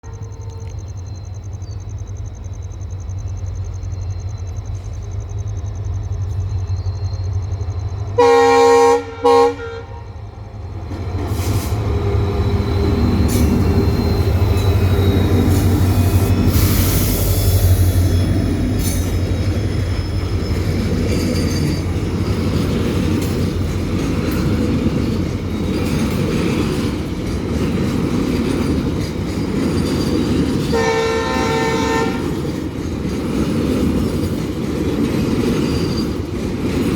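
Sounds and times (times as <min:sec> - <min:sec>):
diesel locomotive rumbling: 0:00.0 - 0:36.9
train air horn: 0:08.2 - 0:10.2, 0:30.7 - 0:32.4
train wagons clattering: 0:10.4 - 0:36.9.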